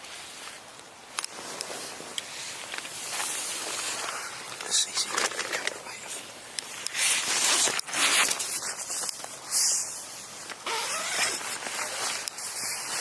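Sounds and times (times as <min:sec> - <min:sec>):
tent fabric rustling: 0:00.0 - 0:13.0
tent zip opening: 0:06.8 - 0:13.0.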